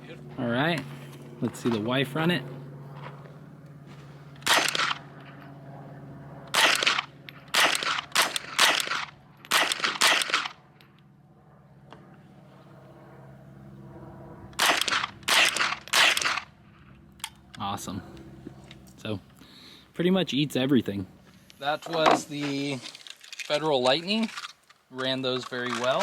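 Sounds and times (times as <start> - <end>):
rifle shots: 4.4 - 5.1, 6.5 - 10.6, 14.6 - 16.5.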